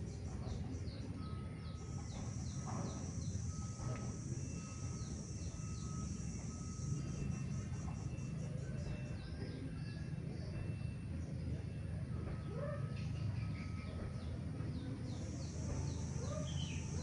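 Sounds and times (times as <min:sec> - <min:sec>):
high insect drone: 0:00.0 - 0:12.1, 0:13.5 - 0:17.0
thin whistle-like tone: 0:01.1 - 0:10.6.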